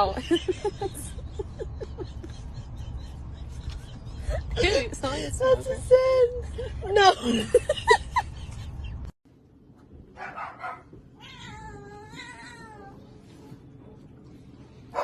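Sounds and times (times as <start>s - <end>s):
cat meowing: 11.1s - 13.1s.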